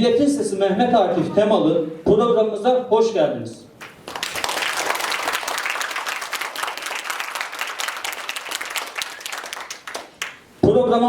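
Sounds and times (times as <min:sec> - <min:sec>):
audience applauding: 0:03.8 - 0:10.4.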